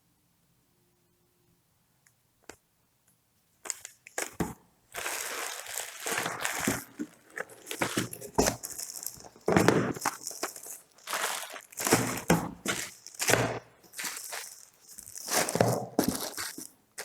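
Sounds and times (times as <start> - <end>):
plastic wrapping crinkling: 3.6 - 17.0.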